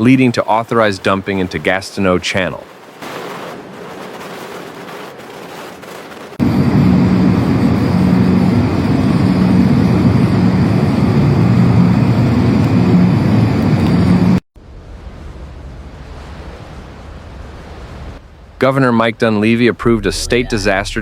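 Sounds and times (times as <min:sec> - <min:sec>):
vehicle engine rumbling: 0:19.7 - 0:21.0.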